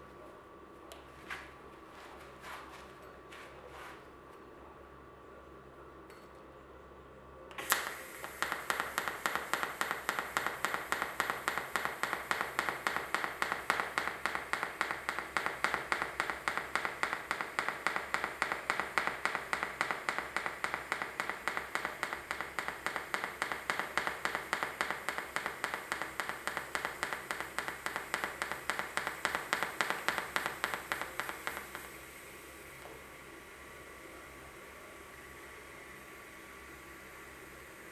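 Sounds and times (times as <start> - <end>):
welding arc crackling: 7.6 - 32.8.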